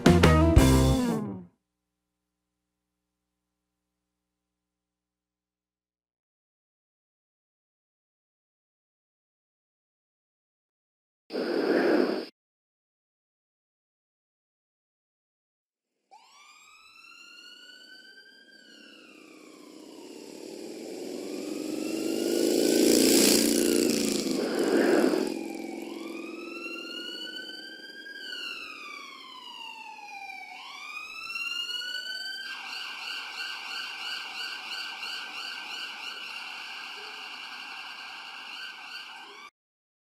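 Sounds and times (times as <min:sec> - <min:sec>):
siren wailing: 0:16.2 - 0:39.5
loud rushing swell: 0:18.7 - 0:29.0.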